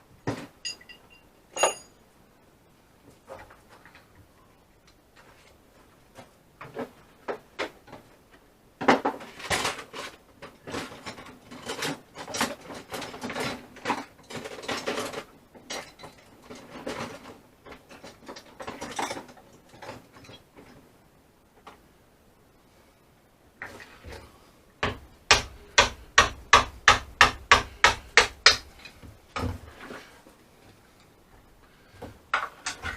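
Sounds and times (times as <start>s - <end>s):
hand tool clicks and clanks: 0.6s - 1.9s.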